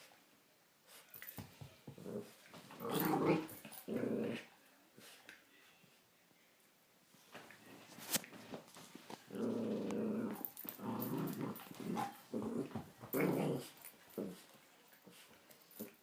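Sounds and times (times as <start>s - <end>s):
dog play-growling: 1.9s - 4.5s, 9.1s - 16.0s.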